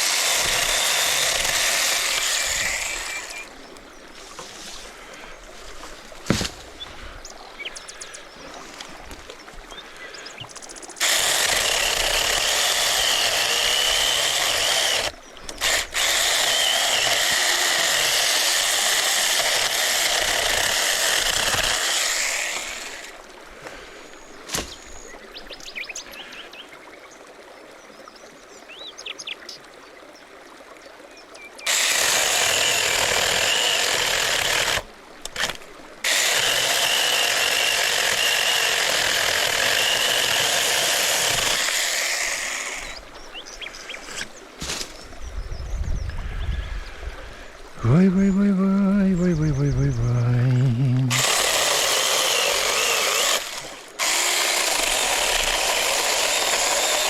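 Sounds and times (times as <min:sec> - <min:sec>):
power tool whining: 0:00.0 - 0:03.5, 0:11.0 - 0:23.2, 0:31.7 - 0:43.0, 0:50.2 - 0:57.0
birds chirping: 0:02.2 - 0:11.1, 0:42.8 - 0:51.1.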